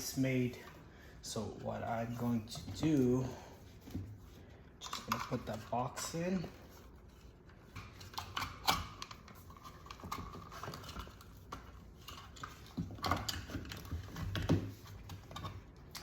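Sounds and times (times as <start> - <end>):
clicks and knocks of handling: 4.8 - 16.0.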